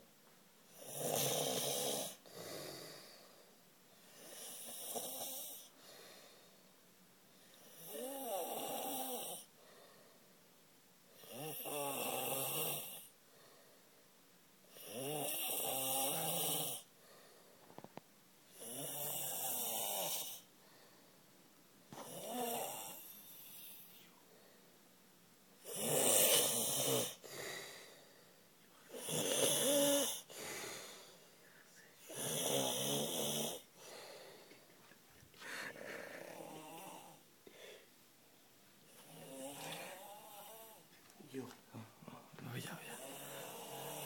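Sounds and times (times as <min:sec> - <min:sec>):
person snoring loudly: 0:00.7 - 0:03.1, 0:07.6 - 0:09.5, 0:11.2 - 0:13.1, 0:14.7 - 0:16.9, 0:18.5 - 0:20.4, 0:22.0 - 0:23.8, 0:25.6 - 0:27.8, 0:28.9 - 0:31.0, 0:32.0 - 0:34.2, 0:35.4 - 0:37.2, 0:38.9 - 0:40.8, 0:42.9 - 0:44.0.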